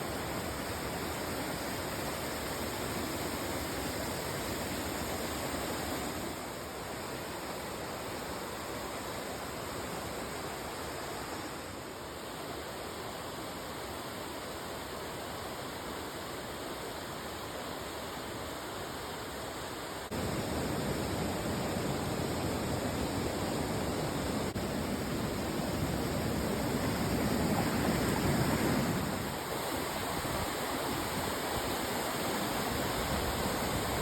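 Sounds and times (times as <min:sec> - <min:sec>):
waterfall rushing: 0:20.1 - 0:34.0.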